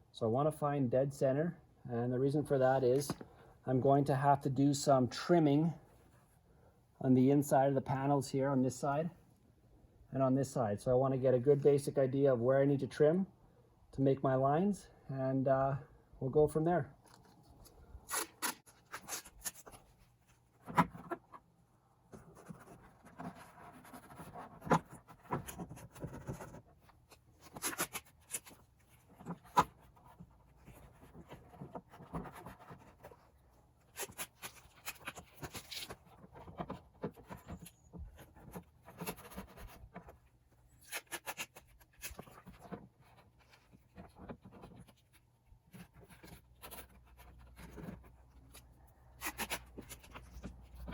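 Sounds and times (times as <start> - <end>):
rubbing and scratching on plastic: 17.0 - 50.9.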